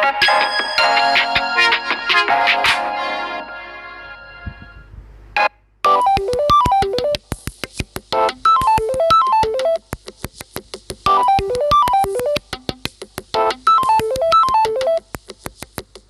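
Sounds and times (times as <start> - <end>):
synth ringtone melody: 0.0 - 7.2, 8.4 - 9.8, 11.1 - 12.4, 13.7 - 15.0.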